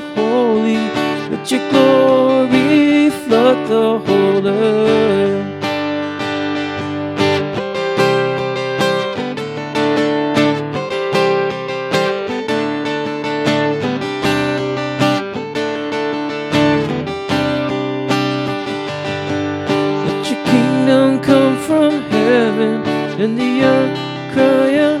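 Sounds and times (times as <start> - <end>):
guitar chords strummed: 0.0 - 25.0.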